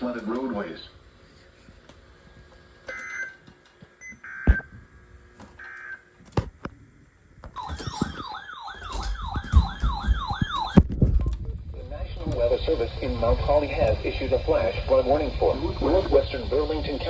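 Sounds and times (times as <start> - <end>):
electronic alert siren warbling: 7.6 - 10.8.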